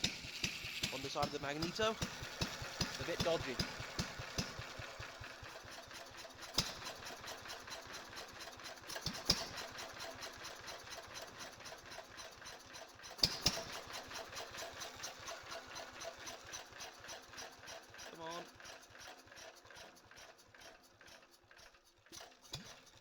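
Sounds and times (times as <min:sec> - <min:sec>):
engine running with fast beat: 0:00.0 - 0:12.4, 0:13.1 - 0:18.5.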